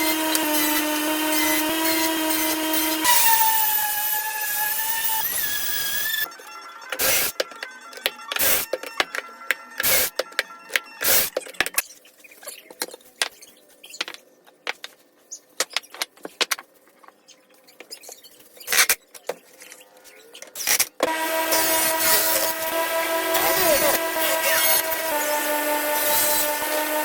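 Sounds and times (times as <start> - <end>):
power tool whining: 0.0 - 6.3, 6.9 - 7.4, 21.0 - 27.0.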